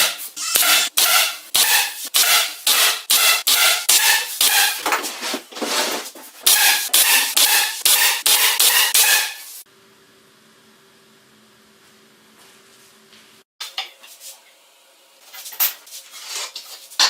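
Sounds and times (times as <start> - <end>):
abrasive tool scraping: 0.0 - 9.6.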